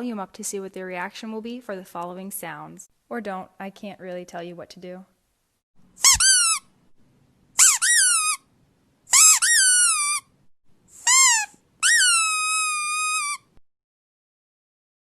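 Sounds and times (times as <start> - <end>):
high-pitched squeaks: 6.0 - 6.7, 7.6 - 8.4, 9.1 - 10.3, 11.0 - 13.6.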